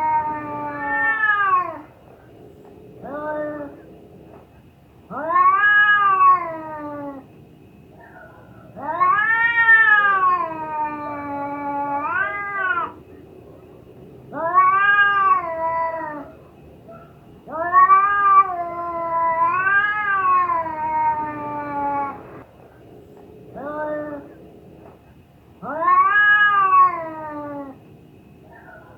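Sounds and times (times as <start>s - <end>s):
cat yowling: 0.0s - 1.9s, 3.0s - 3.9s, 5.1s - 7.3s, 8.0s - 13.0s, 14.2s - 22.5s, 23.5s - 24.4s, 25.6s - 27.8s.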